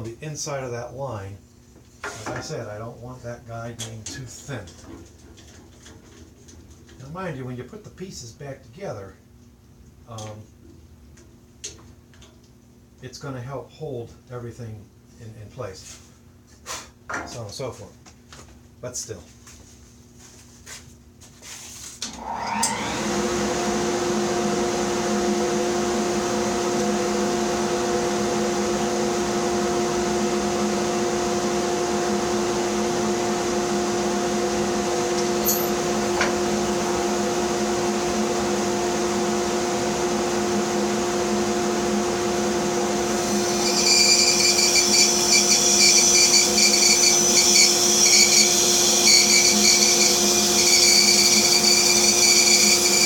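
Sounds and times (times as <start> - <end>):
bandsaw motor whine: 22.1 - 53.0
bandsaw cutting wood: 41.5 - 53.0.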